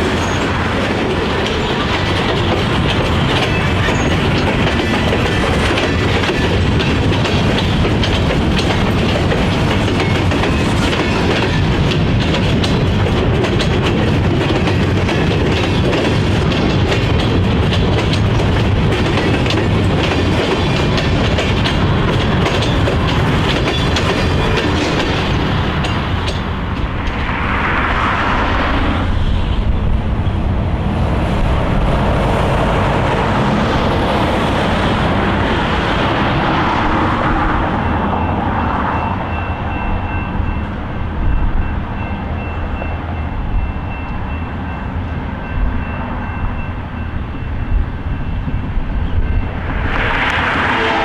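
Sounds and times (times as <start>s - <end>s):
train wheels rumbling on rail: 0.0s - 51.0s.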